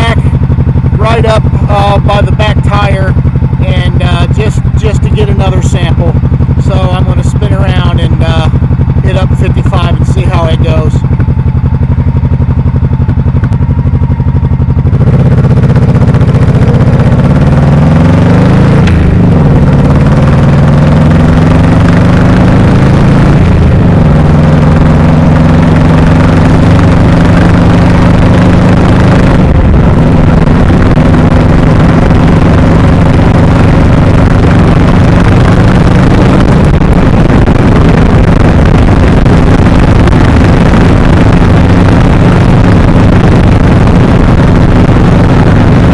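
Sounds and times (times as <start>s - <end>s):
motorcycle engine pulling away: 11.2s - 45.9s.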